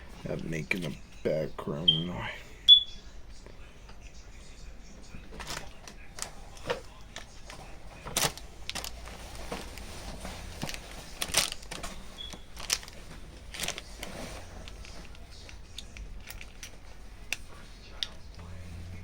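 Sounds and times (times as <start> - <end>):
faint low hum: 0.0 - 19.0
packaging crinkling and rustling: 5.3 - 18.4.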